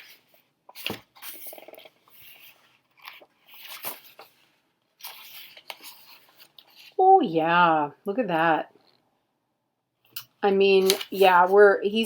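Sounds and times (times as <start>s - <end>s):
paper pages rustling: 0.0s - 7.0s, 10.7s - 12.0s.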